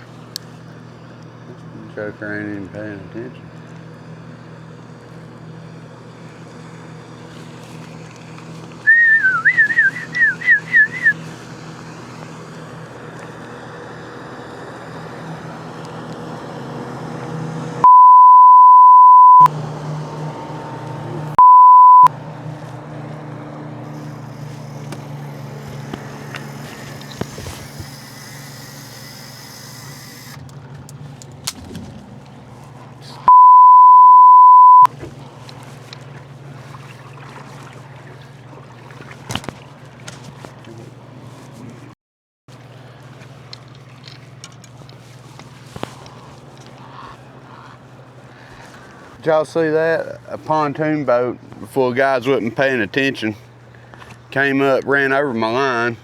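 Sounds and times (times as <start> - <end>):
outboard motor droning: 0.0 - 56.0
censor bleeps: 17.8 - 19.5, 21.4 - 22.1, 33.3 - 34.9.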